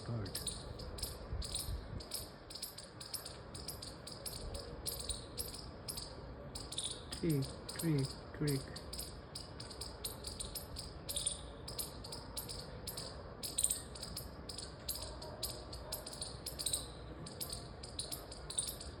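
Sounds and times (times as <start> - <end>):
rapid high-pitched chirping: 0.0 - 19.0.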